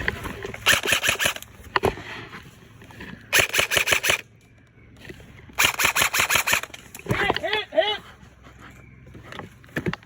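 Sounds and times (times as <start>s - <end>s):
airsoft gun shots: 0.6s - 1.4s, 3.3s - 4.2s, 5.6s - 6.7s.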